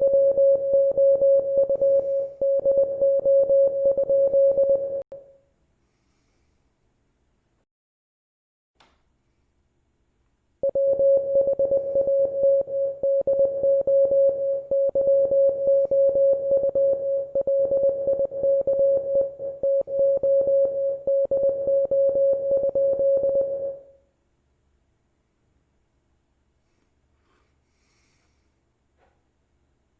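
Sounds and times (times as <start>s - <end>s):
morse code beeps: 0.0s - 5.0s, 10.6s - 23.8s.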